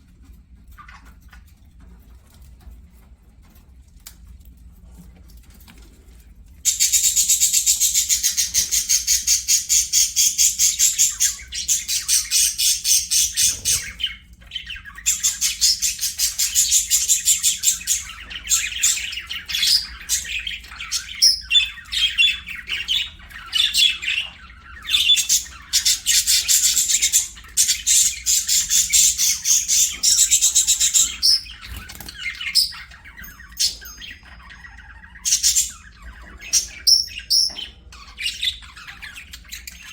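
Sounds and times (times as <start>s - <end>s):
budgerigars chattering: 6.7s - 39.9s.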